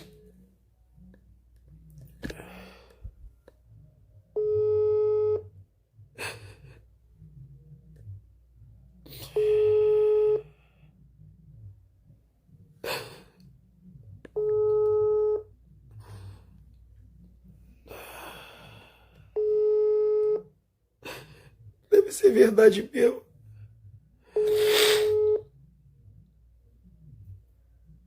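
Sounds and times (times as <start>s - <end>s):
telephone ringback beep: 4.4s - 5.4s, 9.3s - 10.5s, 14.4s - 15.5s, 19.4s - 20.4s, 24.4s - 25.4s.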